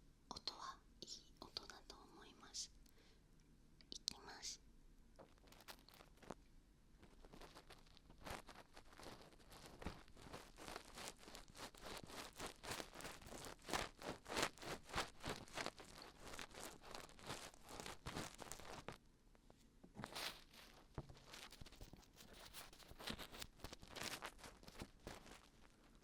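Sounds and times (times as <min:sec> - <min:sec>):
crackly glue peeling: 0:05.2 - 0:06.4, 0:07.0 - 0:19.0, 0:20.0 - 0:26.0.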